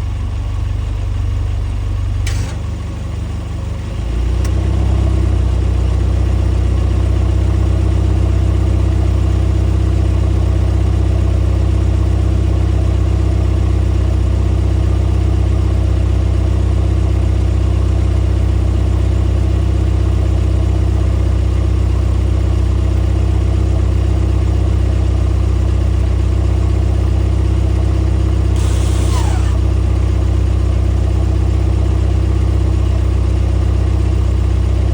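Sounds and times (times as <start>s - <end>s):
car engine droning: 0.0s - 8.8s, 26.9s - 34.9s
brief hiss with falling tone: 28.6s - 29.7s.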